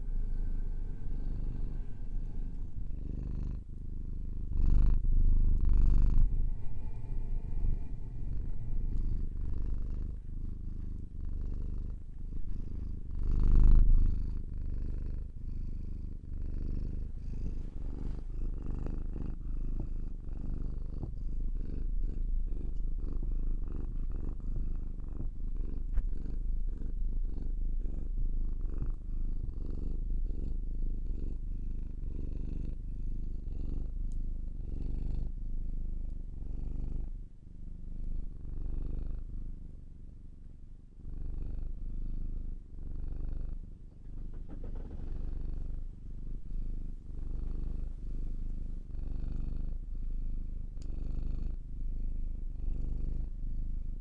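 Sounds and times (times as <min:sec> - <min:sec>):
cat purring: 0:00.0 - 0:54.0.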